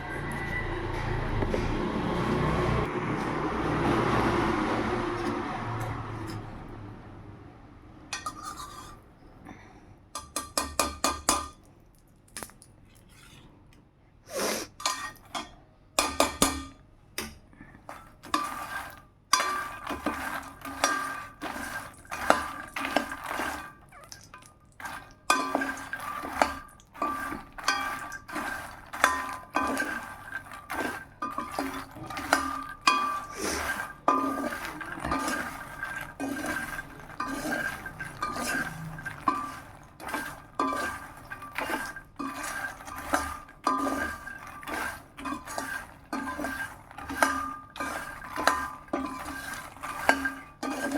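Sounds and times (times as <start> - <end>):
metal spoon scraping steel pan: 8.2 - 9.0, 14.6 - 16.8, 17.9 - 50.9.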